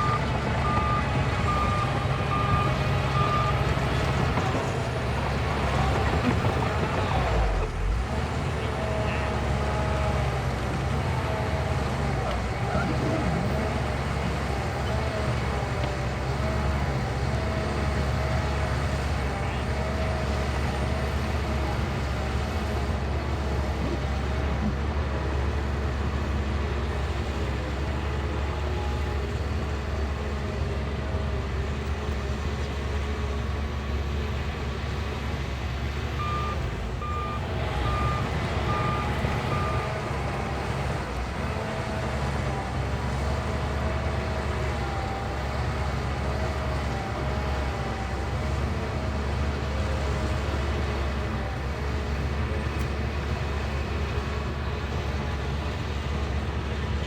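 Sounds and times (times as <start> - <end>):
reversing alarm beeps: 0.0 - 3.7, 36.2 - 40.0
bulldozer diesel engine running: 0.0 - 57.0.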